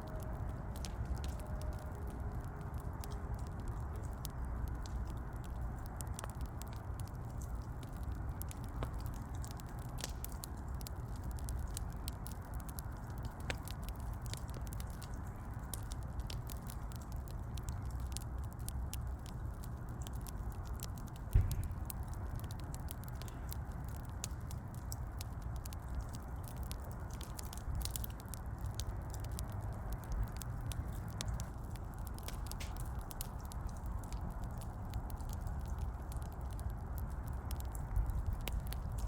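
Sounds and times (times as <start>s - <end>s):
wood fire crackling: 0.0s - 39.0s.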